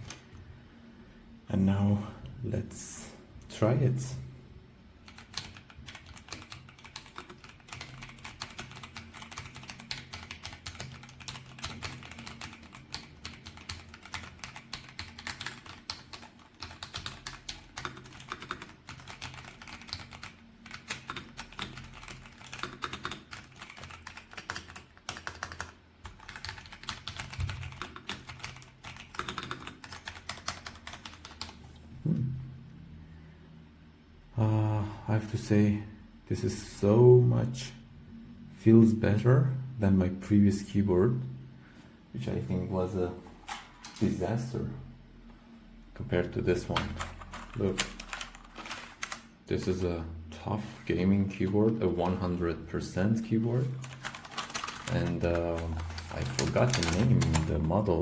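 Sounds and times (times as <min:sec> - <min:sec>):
mechanical keyboard typing: 0:05.0 - 0:31.6, 0:46.6 - 0:49.8, 0:53.7 - 0:58.0.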